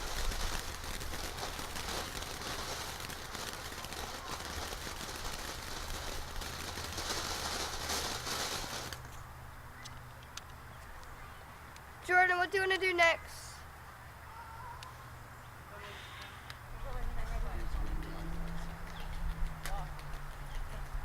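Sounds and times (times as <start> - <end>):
ground firework hissing and popping: 0.0 - 9.2.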